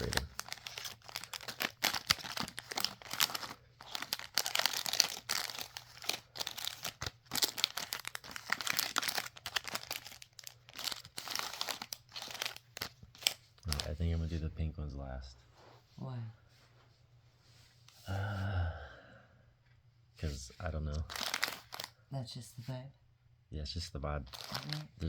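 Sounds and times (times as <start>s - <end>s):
plastic packs crinkling: 0.0s - 14.0s, 21.0s - 21.9s, 24.3s - 25.0s.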